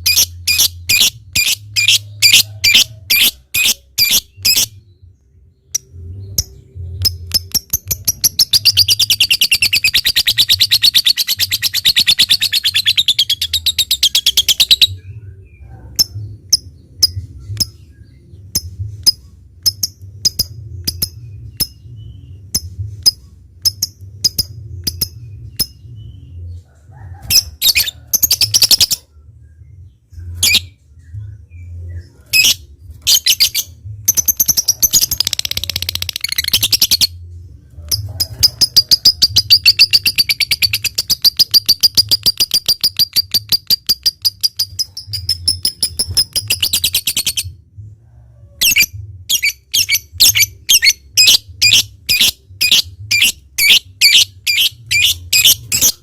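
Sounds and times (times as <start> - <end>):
bird chirping: 0.0 - 37.3, 37.9 - 47.5, 48.6 - 56.0
bird chattering trill: 7.2 - 15.0, 32.4 - 37.1, 37.9 - 47.4, 48.6 - 56.0.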